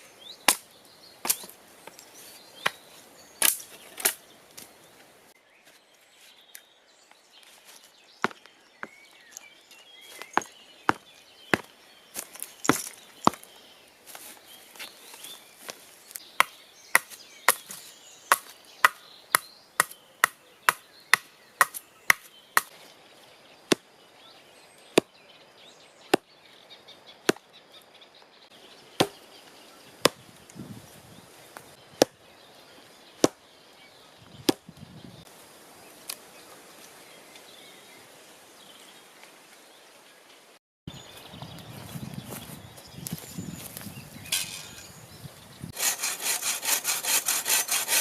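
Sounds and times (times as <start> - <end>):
wood chopping strikes: 0.5 - 1.5, 3.4 - 4.2, 12.6 - 13.5, 16.4 - 22.7, 29.0 - 29.2, 30.0 - 30.2, 32.0 - 32.2, 33.2 - 33.4, 34.4 - 34.7.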